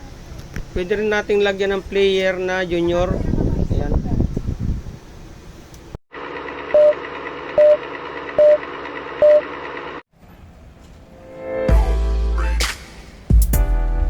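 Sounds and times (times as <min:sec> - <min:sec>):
short electronic beeps: 0:06.8 - 0:07.0, 0:07.6 - 0:07.8, 0:08.4 - 0:08.6, 0:09.2 - 0:09.5.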